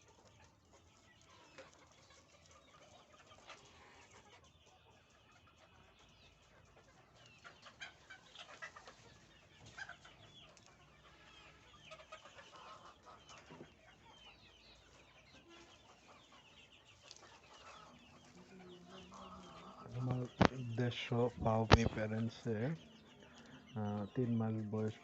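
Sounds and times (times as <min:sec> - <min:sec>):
chickens clucking: 0:00.0 - 0:25.0.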